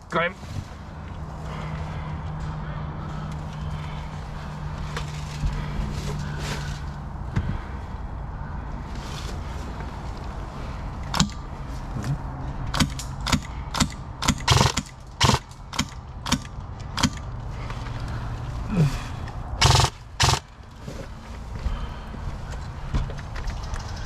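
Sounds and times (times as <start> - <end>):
airsoft gun shots: 12.8 - 17.2, 19.6 - 20.4.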